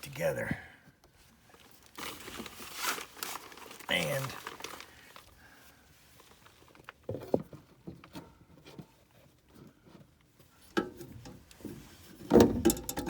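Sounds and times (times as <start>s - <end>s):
metal parts clicking and knocking: 12.3s - 13.0s.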